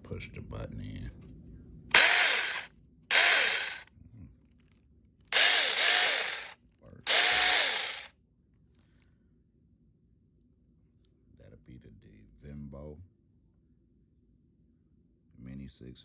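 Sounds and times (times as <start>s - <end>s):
electric chainsaw revving in bursts: 2.0s - 3.8s, 5.4s - 8.1s.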